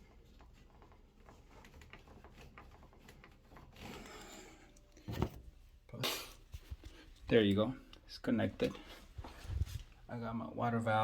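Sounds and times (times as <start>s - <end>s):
hose handling rubbing and clicking: 0.0s - 5.5s.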